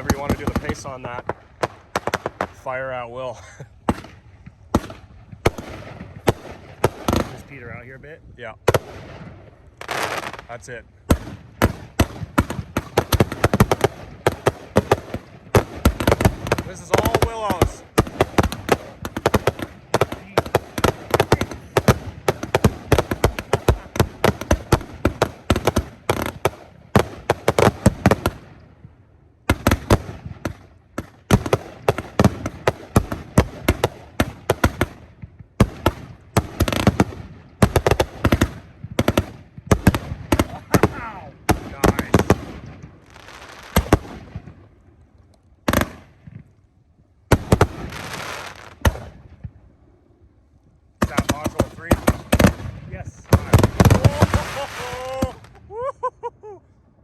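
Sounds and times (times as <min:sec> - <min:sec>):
fireworks launching and bursting: 0:00.0 - 0:45.0, 0:45.6 - 0:46.6, 0:47.2 - 0:49.6, 0:51.0 - 0:56.5.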